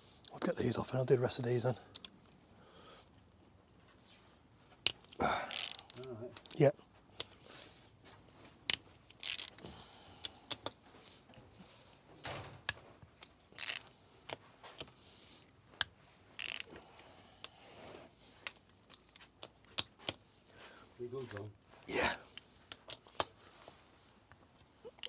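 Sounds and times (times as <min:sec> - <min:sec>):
metal parts clinking: 0:05.0 - 0:06.6, 0:09.1 - 0:09.6, 0:13.6 - 0:13.8, 0:16.4 - 0:16.7.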